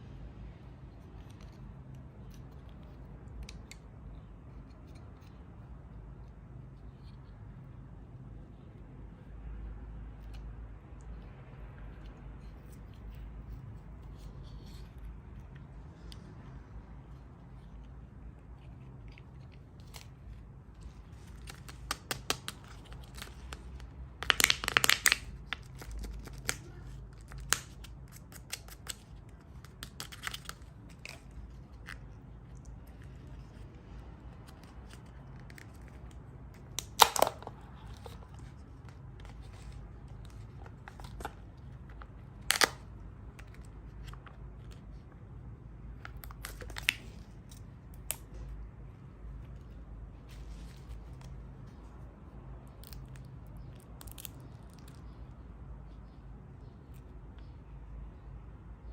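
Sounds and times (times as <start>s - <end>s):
plastic eggs opened by hand: 1.1s - 5.4s, 17.1s - 45.1s, 46.0s - 48.5s, 52.6s - 55.2s.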